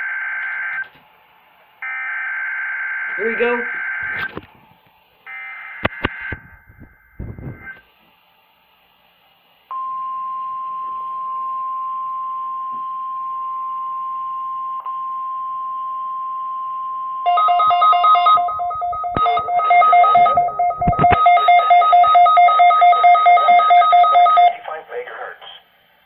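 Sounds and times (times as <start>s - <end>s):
steady high alarm tone: 9.8s - 24.6s
pulsed ringing two-note alarm: 16.7s - 24.5s.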